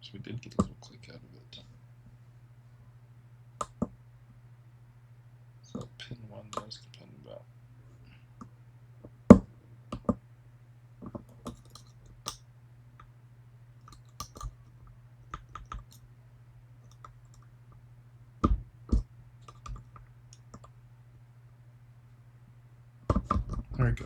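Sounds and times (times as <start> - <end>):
lock picks clicking in lock: 13.9 - 14.6.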